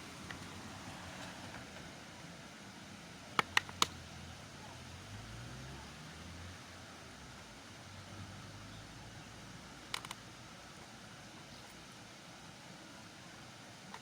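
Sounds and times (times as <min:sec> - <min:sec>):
faint background noise: 0:00.0 - 0:14.0.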